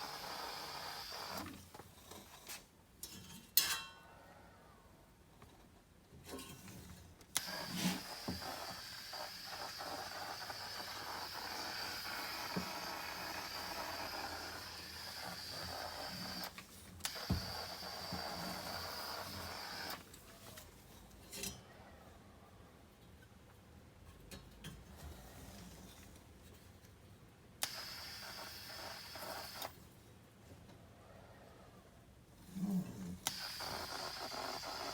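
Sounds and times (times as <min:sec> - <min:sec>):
compressed air spray gun hissing: 0:00.0 - 0:01.5, 0:07.4 - 0:20.0, 0:27.6 - 0:29.7, 0:33.2 - 0:34.9.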